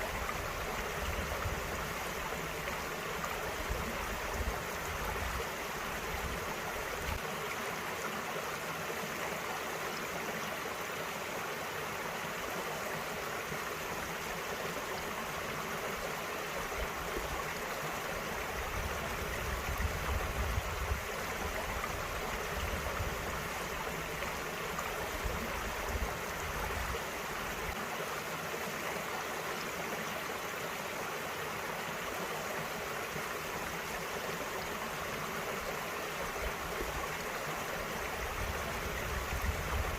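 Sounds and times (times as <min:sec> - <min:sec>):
stream running over rocks: 0:00.0 - 0:39.9
wind rumbling on microphone: 0:18.6 - 0:23.3, 0:38.2 - 0:39.9.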